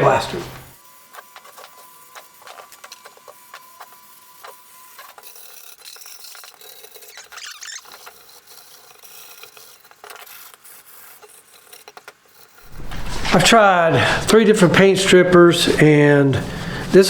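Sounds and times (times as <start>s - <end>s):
wire brush scrubbing metal: 10.4s - 17.0s.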